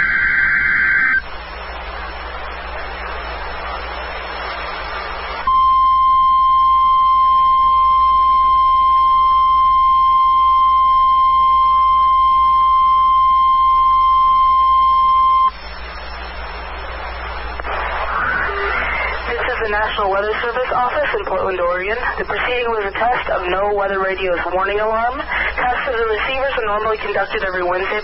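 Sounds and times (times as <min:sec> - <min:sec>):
radio hiss: 0:00.0 - 0:05.5, 0:15.1 - 0:28.0.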